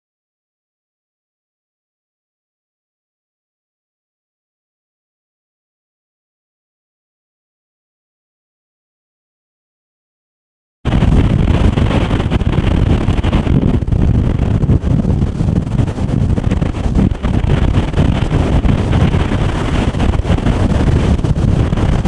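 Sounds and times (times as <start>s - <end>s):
heavy ocean surf roaring: 10.9s - 22.0s
wind buffeting microphone: 10.9s - 22.0s.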